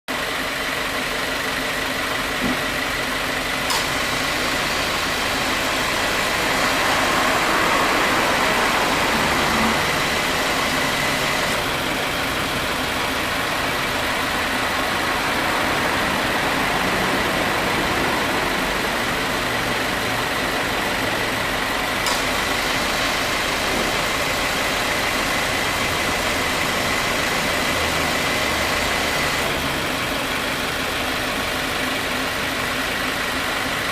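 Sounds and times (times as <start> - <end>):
car engine idling: 0.1 - 33.9
compressor clutch clicks: 3.7 - 4.5, 22.0 - 22.4.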